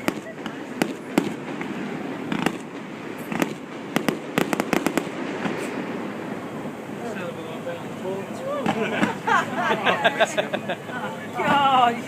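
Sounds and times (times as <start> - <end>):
fireworks bangs and crackling: 0.0 - 7.0, 8.6 - 9.3.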